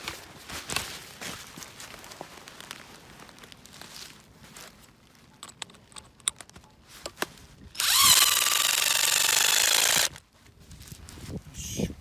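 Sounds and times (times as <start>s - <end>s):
power drill whining: 7.8s - 10.2s.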